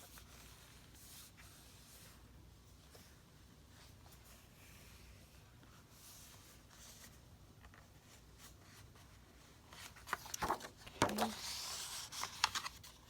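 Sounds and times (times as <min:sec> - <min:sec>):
paper rustling: 0:06.6 - 0:13.0
paper crinkling: 0:09.7 - 0:13.0.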